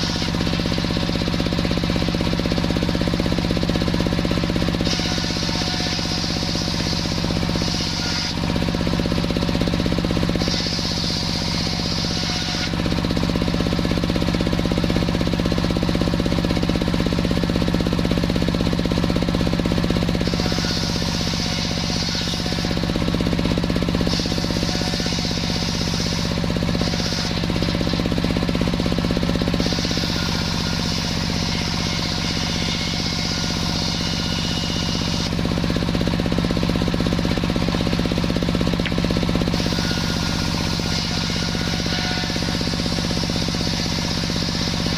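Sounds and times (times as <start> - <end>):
sawmill engine pulsing: 0.0 - 44.9
saw hissing through wood: 24.0 - 28.4, 29.6 - 35.4.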